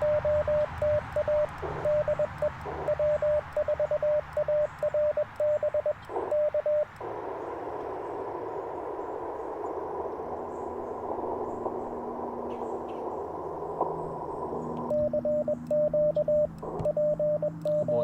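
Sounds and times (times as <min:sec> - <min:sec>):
morse code beeps: 0:00.0 - 0:07.0, 0:14.8 - 0:18.0
radio receiver hiss: 0:00.0 - 0:18.0.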